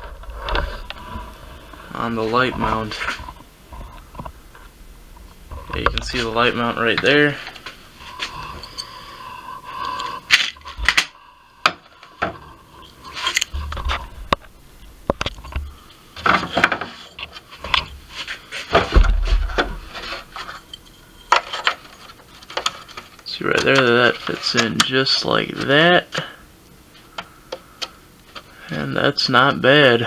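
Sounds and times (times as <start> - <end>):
handling clicks and scrapes: 11.9 - 25.7.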